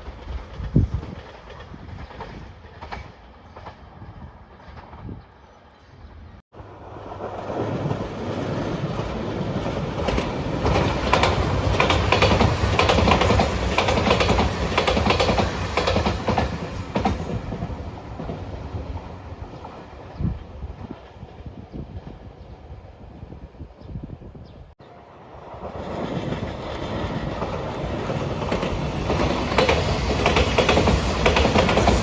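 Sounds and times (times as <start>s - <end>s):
electric train passing: 6.6s - 23.1s, 24.8s - 32.0s.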